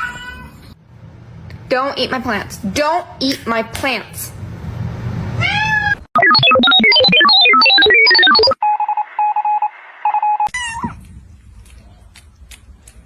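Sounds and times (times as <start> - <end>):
electronic beeping notes: 6.2 - 10.5.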